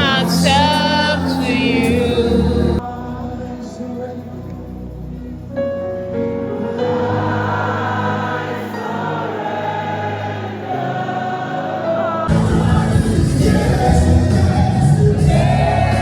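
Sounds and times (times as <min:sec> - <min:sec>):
gospel choir singing: 0:00.0 - 0:05.2, 0:06.4 - 0:16.0
heavy bass music: 0:12.3 - 0:16.0.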